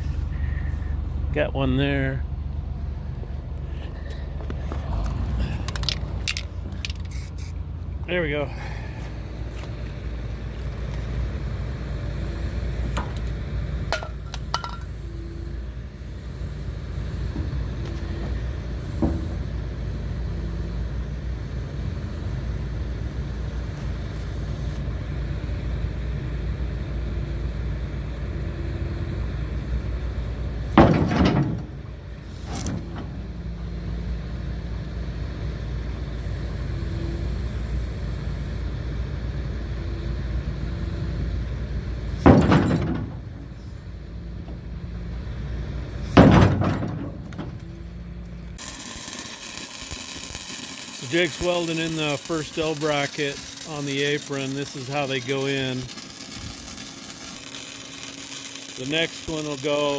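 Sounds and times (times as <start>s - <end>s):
large engine idling: 0.0s - 48.7s
loud engine burst: 48.6s - 59.9s.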